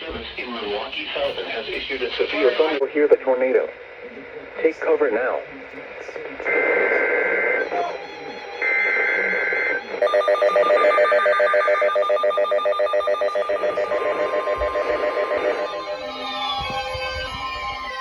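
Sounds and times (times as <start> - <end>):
steady tone: 6.5 - 18.0
two-tone buzzing data chirps: 6.5 - 18.0
warbling alert alarm: 7.6 - 18.0.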